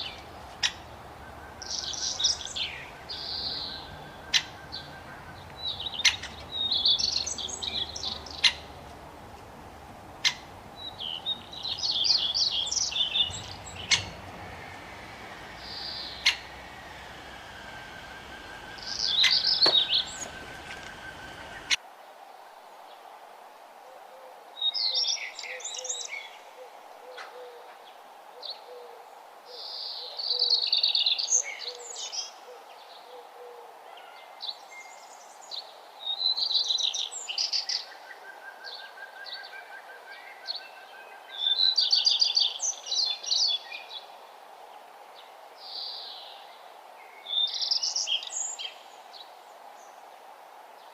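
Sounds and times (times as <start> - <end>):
low background rumble: 0.0 - 21.8
songbird chirping: 0.0 - 21.8, 24.6 - 50.2.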